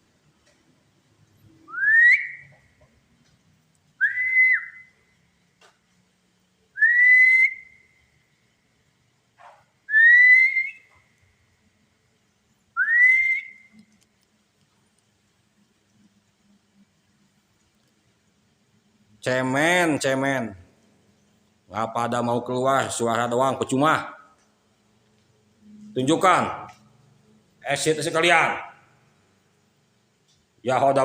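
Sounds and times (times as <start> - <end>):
rising whistles: 1.5 - 2.7, 4.0 - 5.2, 6.7 - 8.3, 9.6 - 11.2, 12.8 - 14.0.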